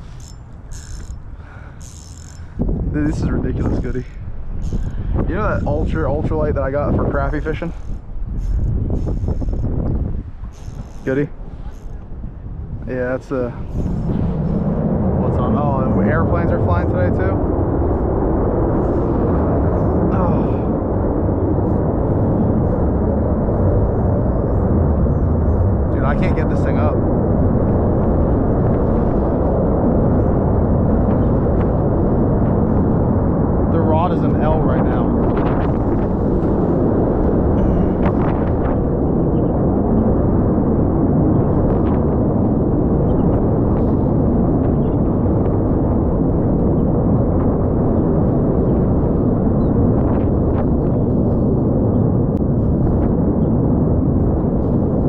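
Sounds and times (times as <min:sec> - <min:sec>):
wind rumbling on microphone: 0:00.0 - 0:55.0.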